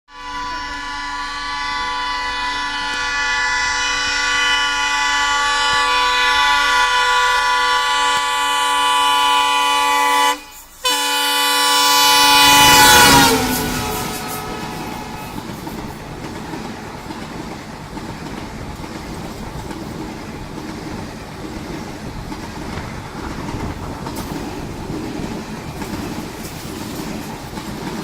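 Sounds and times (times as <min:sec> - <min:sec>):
locomotive horn blast: 0:00.1 - 0:17.2
train rumble: 0:00.5 - 0:28.0.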